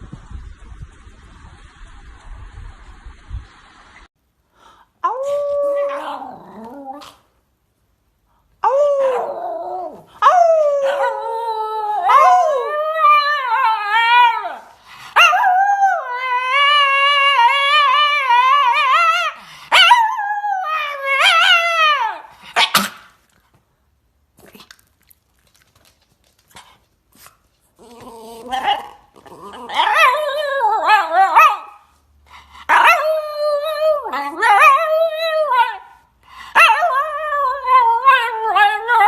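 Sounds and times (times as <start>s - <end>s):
dog howling: 5.0s - 7.1s, 8.6s - 22.3s, 27.8s - 31.8s, 32.7s - 36.0s.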